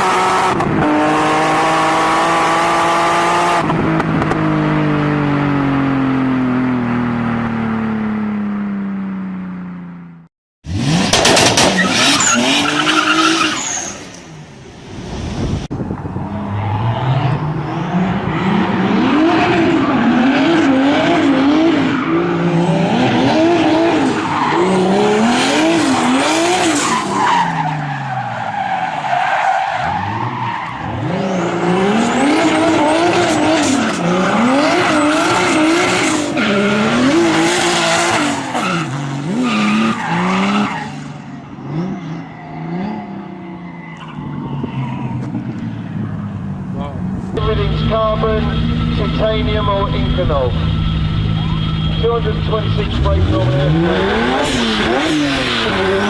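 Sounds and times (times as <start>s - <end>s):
car engine revving hard: 0.0s - 4.4s, 10.6s - 13.8s, 16.8s - 27.6s, 29.8s - 41.0s, 47.4s - 56.0s
tyre squeal: 11.7s - 14.2s.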